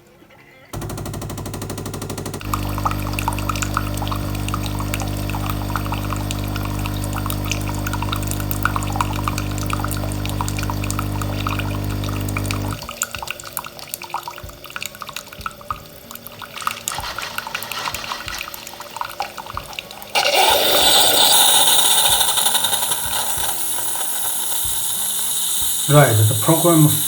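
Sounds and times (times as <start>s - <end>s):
coffee machine pump humming: 0.8s - 13.3s, 19.5s - 27.0s
water dripping into cup: 2.4s - 17.1s
loud hiss of steam: 20.2s - 27.0s.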